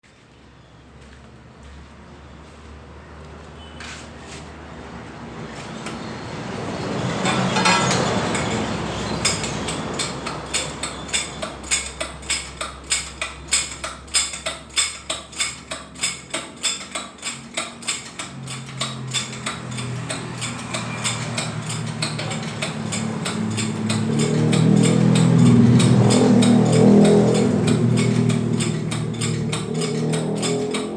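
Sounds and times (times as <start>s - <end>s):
hammering on metal: 7.3s - 30.9s.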